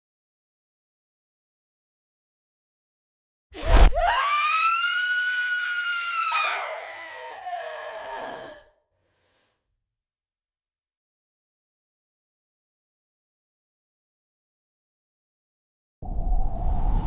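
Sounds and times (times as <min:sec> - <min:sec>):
shrill ghostly shriek: 0:04.0 - 0:08.6.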